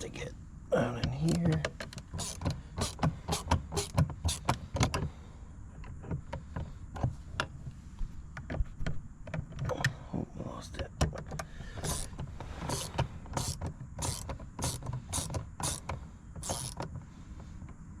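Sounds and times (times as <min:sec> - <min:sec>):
hand ratchet clicking: 0:01.3 - 0:05.1, 0:11.2 - 0:16.9.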